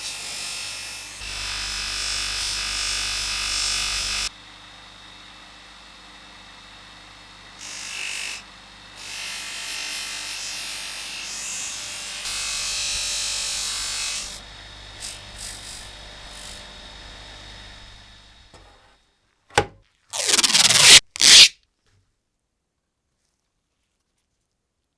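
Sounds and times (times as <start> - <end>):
scrubbing on metal knife: 20.2 - 21.5.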